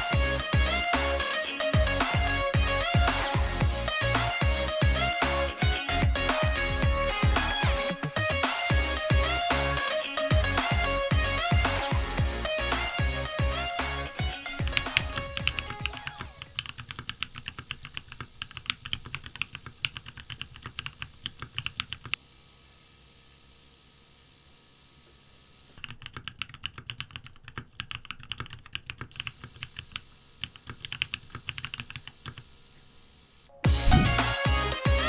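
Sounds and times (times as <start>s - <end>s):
mechanical keyboard typing: 12.8s - 33.6s.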